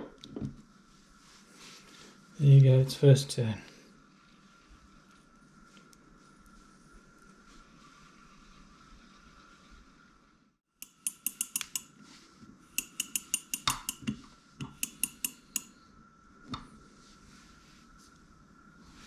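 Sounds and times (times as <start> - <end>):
fishing reel clicking: 10.8 - 11.9, 12.8 - 14.0, 14.7 - 15.7.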